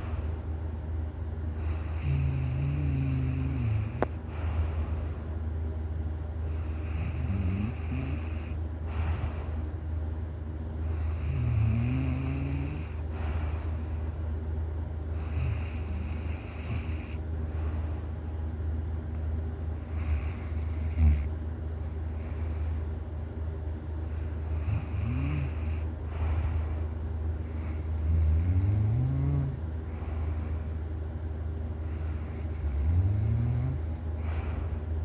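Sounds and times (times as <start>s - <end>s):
steady low hum: 0.0s - 35.0s
person snoring: 1.8s - 4.1s, 6.8s - 8.6s, 10.9s - 13.0s, 15.2s - 17.2s, 20.0s - 21.3s, 24.6s - 25.9s, 27.6s - 29.7s, 32.3s - 34.4s.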